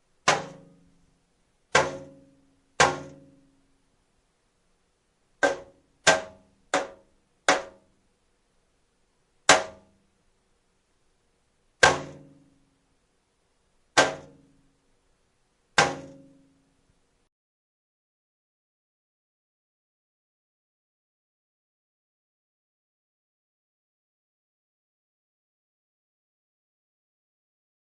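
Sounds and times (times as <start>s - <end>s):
dull metallic clangs: 0.2s - 1.1s, 1.7s - 3.6s, 11.8s - 12.6s, 14.0s - 14.6s, 15.8s - 16.6s.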